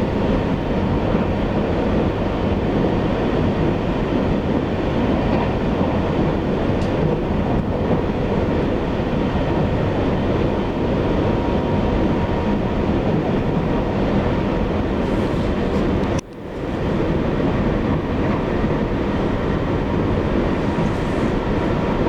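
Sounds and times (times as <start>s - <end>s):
train wheels rumbling on rail: 0.0s - 22.0s
click: 6.8s - 7.0s, 15.7s - 16.4s.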